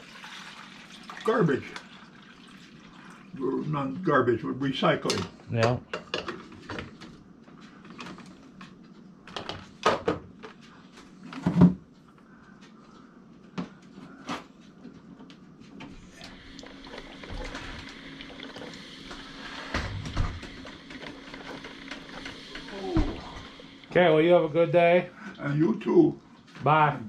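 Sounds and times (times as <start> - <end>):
rushing hiss: 16.3 - 24.4.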